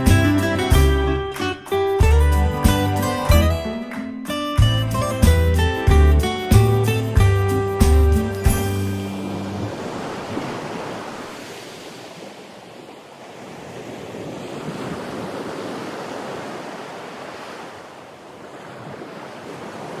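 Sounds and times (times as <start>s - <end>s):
sea surf washing onto beach: 6.2s - 20.0s.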